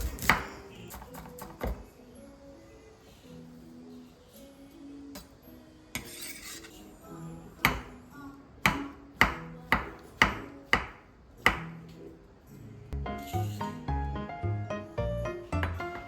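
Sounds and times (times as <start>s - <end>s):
light background music: 0.0s - 16.0s.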